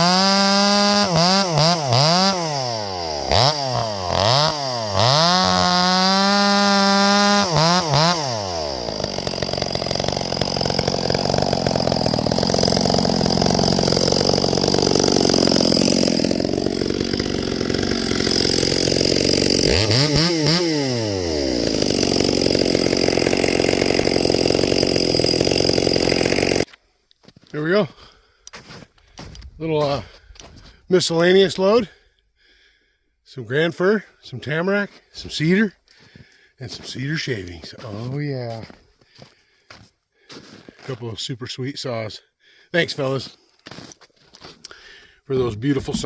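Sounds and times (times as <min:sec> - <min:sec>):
chainsaw cutting wood: 0:00.0 - 0:26.8, 0:43.6 - 0:46.0.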